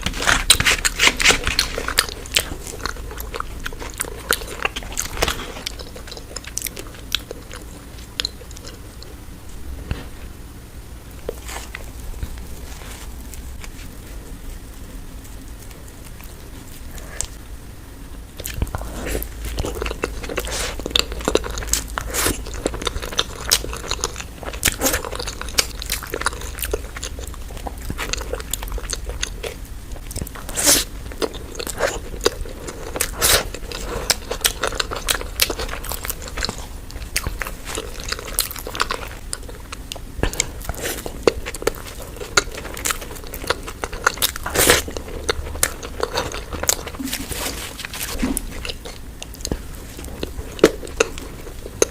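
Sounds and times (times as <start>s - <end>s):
crunching and chewing food: 0.0s - 51.9s.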